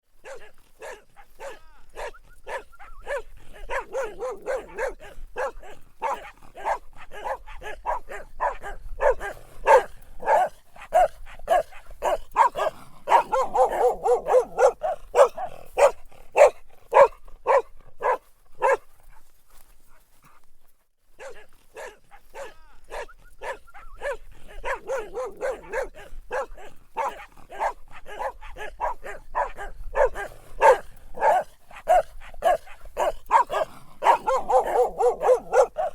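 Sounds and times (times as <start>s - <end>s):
dog barking rapidly: 0.2s - 18.8s, 21.2s - 35.9s.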